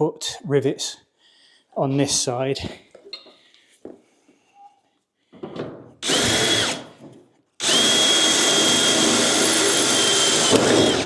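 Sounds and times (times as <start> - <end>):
power drill whining: 6.0 - 7.0, 7.6 - 11.0.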